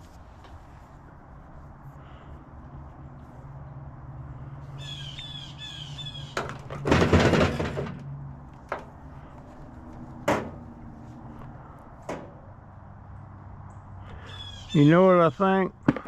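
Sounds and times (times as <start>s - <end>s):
squeaky falling calls: 4.8s - 6.4s, 14.1s - 15.0s
loud rattling clatter: 6.4s - 8.1s.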